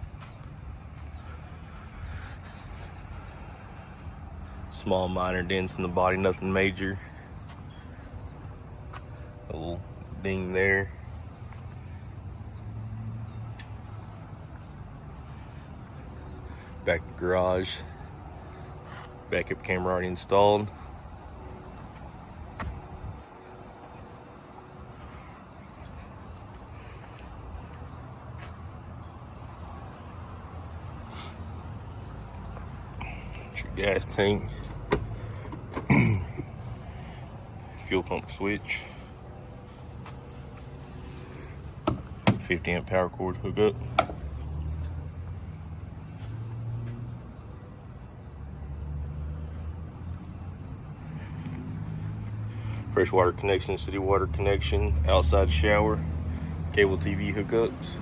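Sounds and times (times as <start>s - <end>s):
insects chirping: 0.0s - 58.0s.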